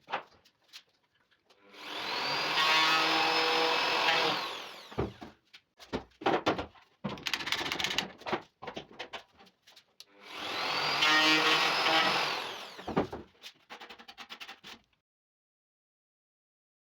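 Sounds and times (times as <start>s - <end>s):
router motor whine: 1.8s - 5.2s, 10.2s - 13.0s.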